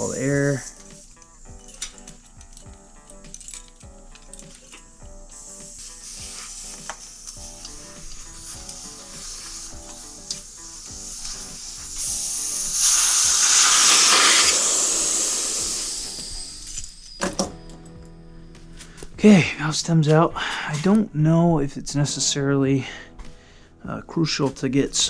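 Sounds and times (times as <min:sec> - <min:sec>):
air hissing out of a tire: 0:00.0 - 0:02.3, 0:04.4 - 0:17.4.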